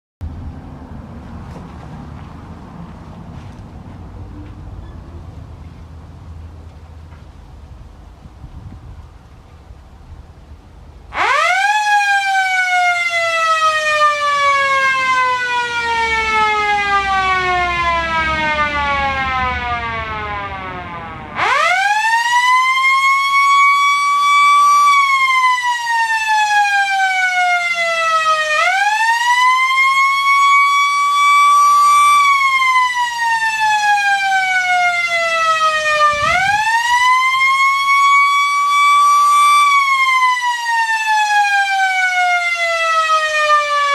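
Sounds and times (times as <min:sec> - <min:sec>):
rotary fire siren wailing: 0:11.1 - 0:43.9.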